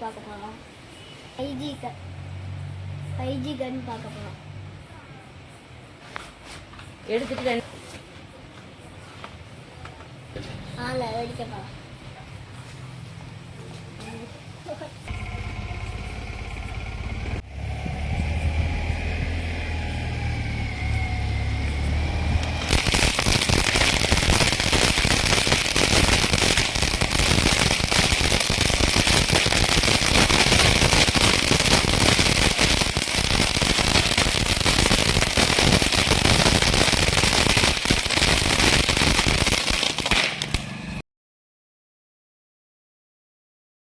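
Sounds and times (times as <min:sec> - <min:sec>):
firework crackling rapidly: 0:15.1 - 0:17.5, 0:21.2 - 0:41.0.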